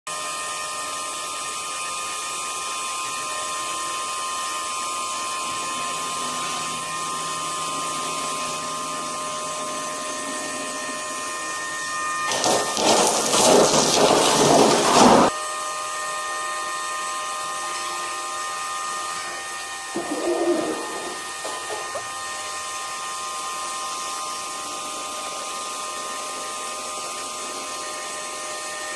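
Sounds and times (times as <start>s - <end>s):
power tool whining hum: 0.1s - 28.9s
harsh grinding noise: 12.2s - 15.3s, 20.0s - 22.0s.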